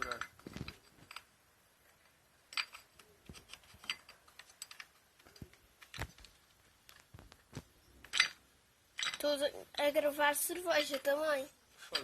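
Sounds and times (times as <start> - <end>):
metallic clicks of engine parts: 2.5 - 6.3.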